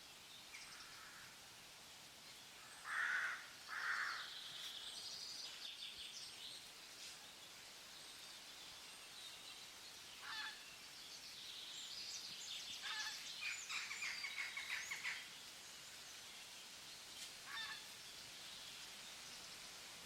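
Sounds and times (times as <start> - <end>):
steady outdoor hiss: 0.0 - 20.0
birds calling and chattering: 8.1 - 19.6.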